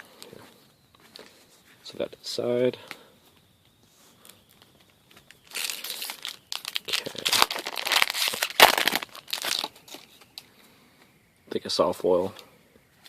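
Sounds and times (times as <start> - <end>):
foil wrapper crinkling and tearing: 5.1 - 10.4.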